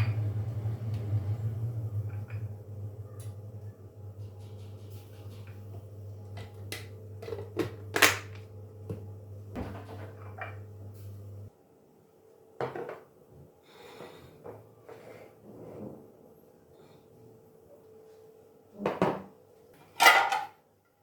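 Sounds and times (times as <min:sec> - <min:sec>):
low steady hum: 0:00.0 - 0:11.9
kitchen items knocking and clicking: 0:04.2 - 0:09.0, 0:09.6 - 0:10.6.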